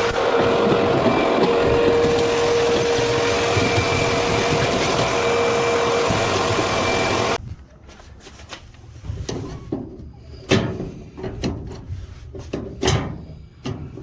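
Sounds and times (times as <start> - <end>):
vacuum cleaner whining: 0.0 - 7.4.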